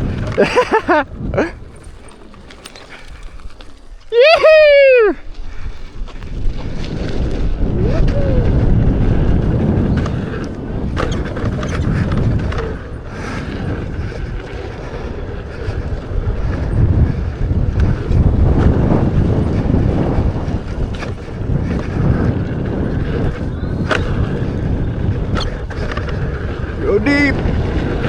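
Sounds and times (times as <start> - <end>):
wind buffeting microphone: 0.0 - 28.0
knocks from riding: 9.4 - 13.3.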